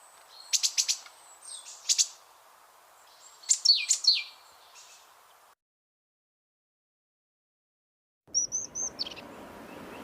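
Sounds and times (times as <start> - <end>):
bird chirping: 0.0 - 2.3, 3.0 - 5.5, 8.3 - 10.0.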